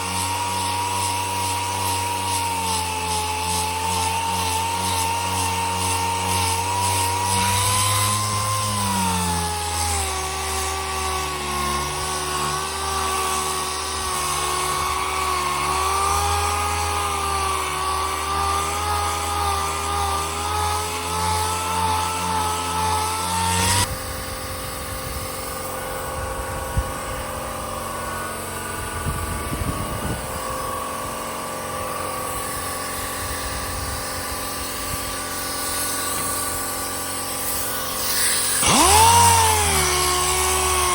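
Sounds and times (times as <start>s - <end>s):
electric power tool running: 0.0s - 40.9s.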